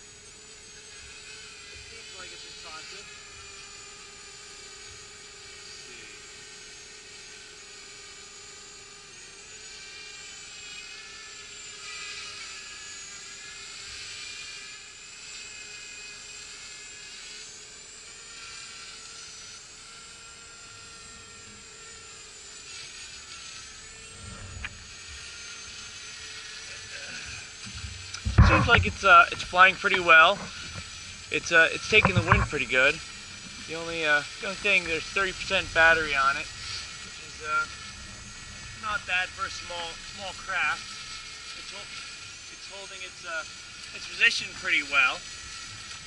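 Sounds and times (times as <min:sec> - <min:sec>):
drone propellers whining: 0:17.2 - 0:46.0.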